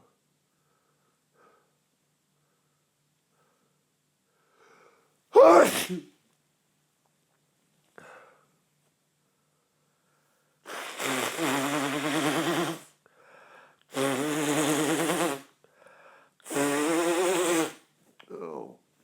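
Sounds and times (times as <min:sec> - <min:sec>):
man blowing his nose: 0:05.4 - 0:06.1, 0:10.7 - 0:13.0, 0:13.9 - 0:15.6, 0:16.4 - 0:17.9
breaths in through the nose: 0:10.7 - 0:17.9.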